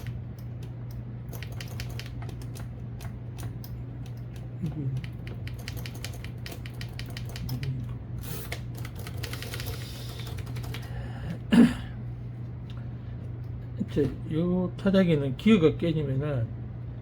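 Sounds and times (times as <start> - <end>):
typewriter key strikes: 1.3 - 4.2, 5.2 - 7.7.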